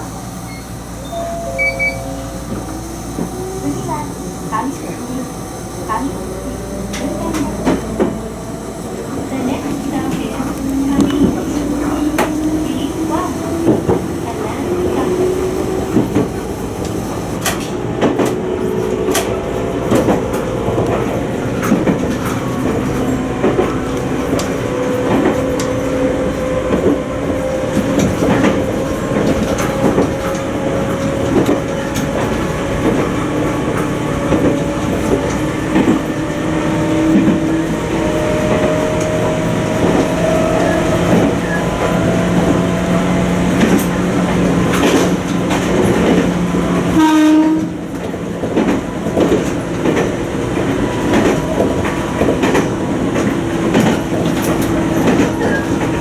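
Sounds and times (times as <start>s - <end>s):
train motor whine: 0.0s - 56.0s
wheels clattering on rail joints: 0.0s - 56.0s
short tone: 0.5s - 3.4s.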